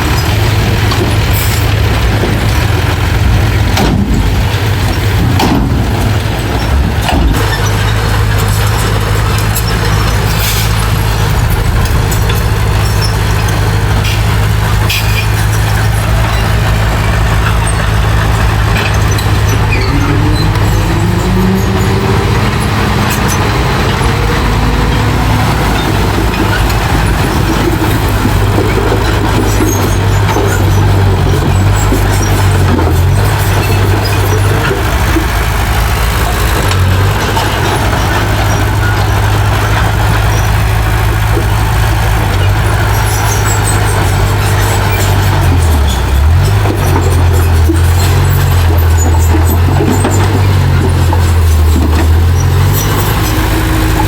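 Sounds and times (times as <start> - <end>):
heavy diesel engine running: 0.0 - 54.0
rising whines: 10.6 - 14.0.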